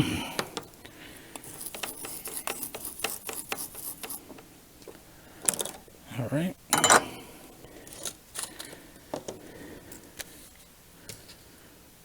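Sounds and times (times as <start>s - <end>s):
small parts and tools clicking: 0.3s - 5.8s, 7.9s - 10.3s
faint rubbing: 1.4s - 4.4s.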